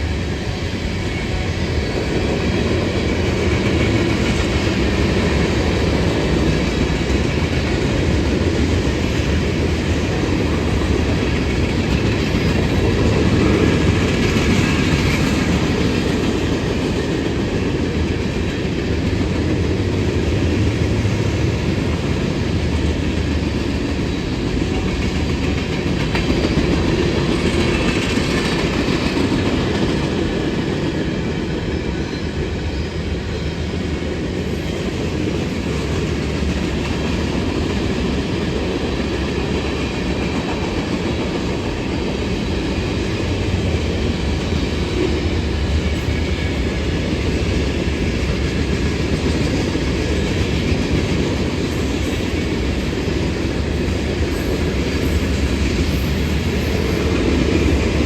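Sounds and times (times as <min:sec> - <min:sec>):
train wheels rumbling on rails: 0:00.0 - 0:58.0.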